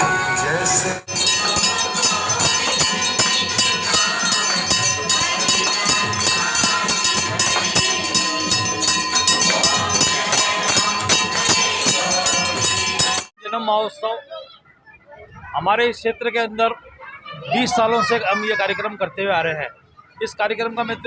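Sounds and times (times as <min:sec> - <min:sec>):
steady ringing tone: 0:01.1 - 0:13.3
temple bells ringing rapidly: 0:01.1 - 0:13.3.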